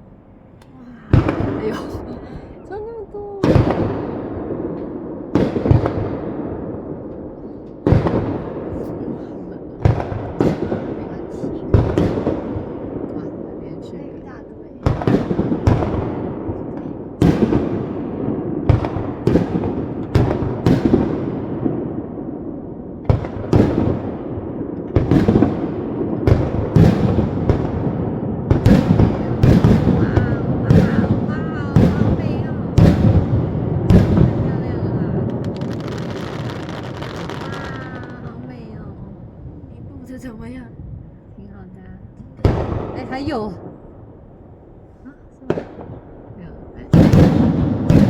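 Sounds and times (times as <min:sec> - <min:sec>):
firework shells booming: 0:00.2 - 0:41.4, 0:42.0 - 0:48.0.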